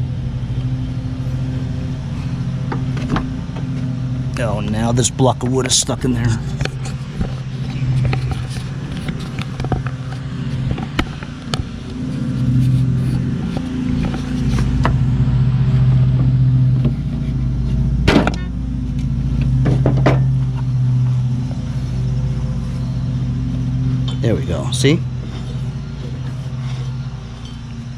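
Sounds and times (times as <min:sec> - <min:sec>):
lawn tractor engine running: 0:00.0 - 0:27.9
knocks and clanks: 0:02.6 - 0:03.9, 0:05.3 - 0:15.0, 0:16.0 - 0:21.4.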